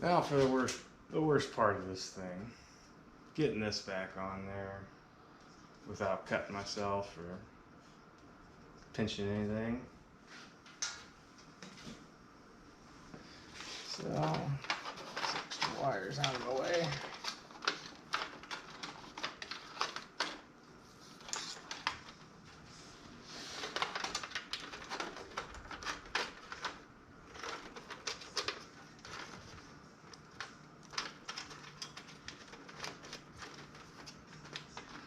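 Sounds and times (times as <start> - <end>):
cables clicking and rustling: 13.5 - 35.0.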